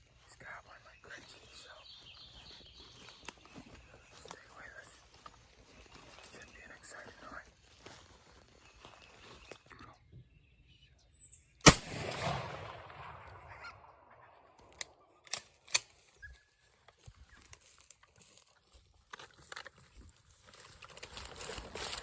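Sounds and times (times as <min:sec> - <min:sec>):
shotgun blast echo: 0:11.6 - 0:14.9.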